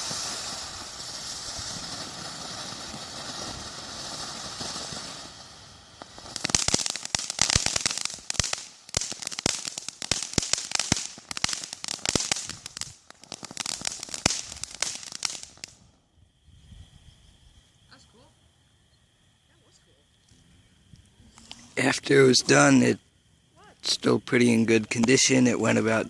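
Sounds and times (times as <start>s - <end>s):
firework fountain hissing: 0.0s - 17.4s
rapid crackling pops: 6.0s - 15.8s, 23.8s - 25.8s.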